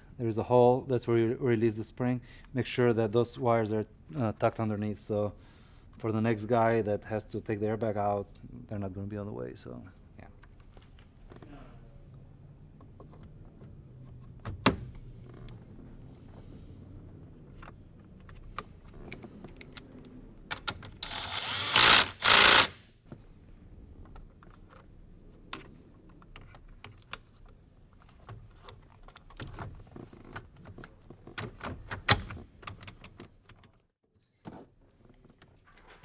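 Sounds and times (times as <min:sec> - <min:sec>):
loud rasping bursts: 0:21.0 - 0:22.8.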